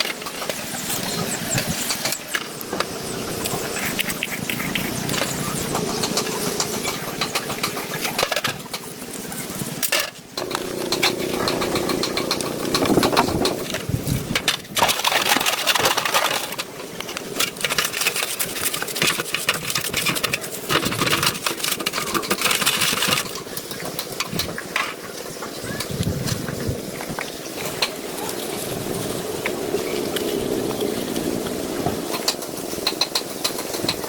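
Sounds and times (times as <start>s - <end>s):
motor running with rough pulse: 10.4s - 15.4s.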